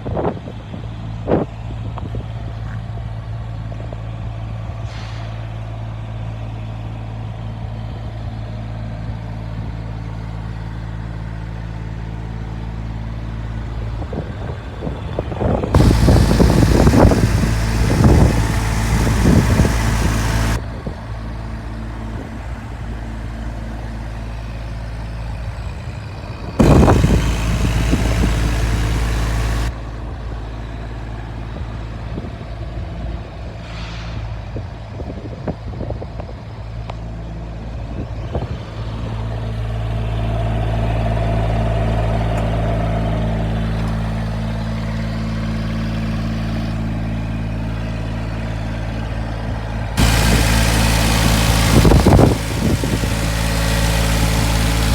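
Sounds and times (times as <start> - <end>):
small diesel engine running: 14.4 - 32.1, 39.6 - 54.9
loud hissing working noise: 15.8 - 20.6, 26.6 - 29.8, 50.0 - 54.9.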